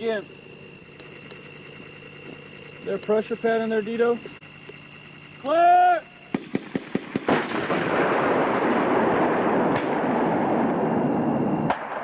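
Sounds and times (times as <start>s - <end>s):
recoilless rifle blast: 6.3s - 12.0s.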